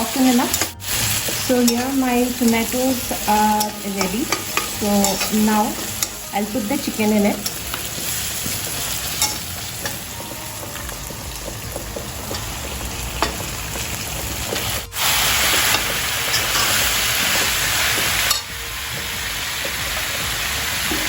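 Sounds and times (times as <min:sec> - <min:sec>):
chicken sizzling in hot oil: 0:00.0 - 0:21.0.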